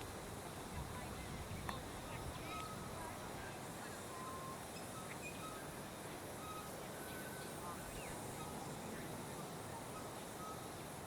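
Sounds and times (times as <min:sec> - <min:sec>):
outdoor background hiss: 0:00.0 - 0:11.0
birds whistling: 0:04.1 - 0:05.8, 0:06.4 - 0:08.8.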